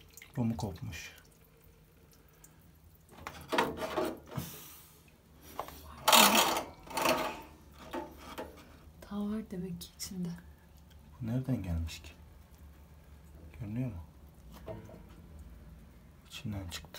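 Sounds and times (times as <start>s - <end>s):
scraping and rattling of wire: 3.1s - 4.5s, 5.6s - 8.9s.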